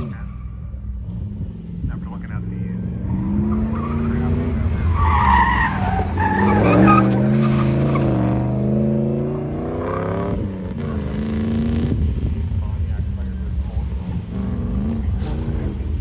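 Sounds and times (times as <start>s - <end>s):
car engine revving: 0.0s - 16.0s
tyres squealing: 3.1s - 8.4s.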